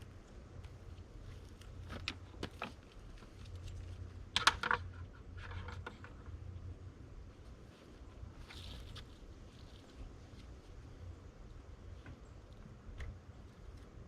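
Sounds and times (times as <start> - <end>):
rustle: 0.0 - 14.0
copper wire clicking and rattling: 0.6 - 6.4.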